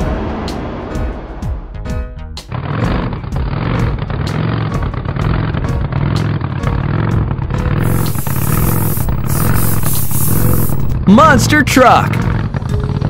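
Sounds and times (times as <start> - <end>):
background music with steady beat: 7.7 - 11.0
high hiss: 7.8 - 11.0.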